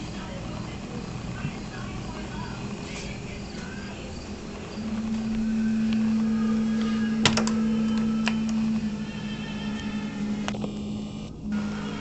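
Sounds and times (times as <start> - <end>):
dishwasher motor hum: 0.0 - 12.0.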